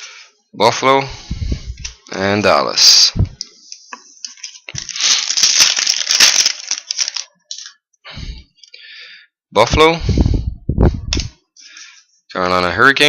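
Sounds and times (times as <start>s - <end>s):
cards rustling: 3.6s - 7.8s
foil wrapper tearing and crinkling: 4.2s - 7.8s.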